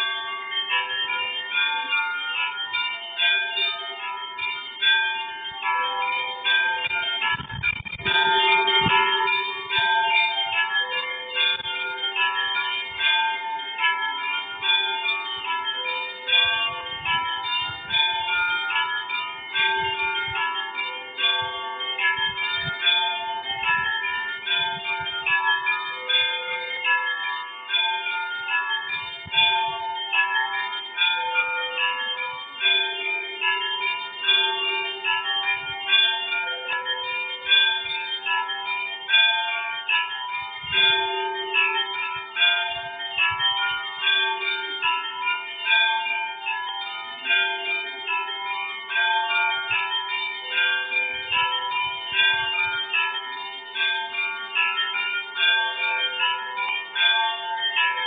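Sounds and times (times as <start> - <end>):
deep bell tolling: 0.0 - 27.0
church bells ringing: 0.0 - 58.0.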